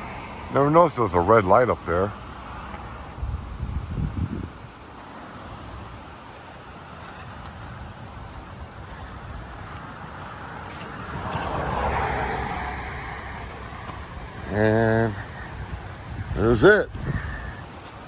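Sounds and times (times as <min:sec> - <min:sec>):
road traffic hiss: 0:00.0 - 0:18.0
vehicle passing by: 0:07.0 - 0:18.0.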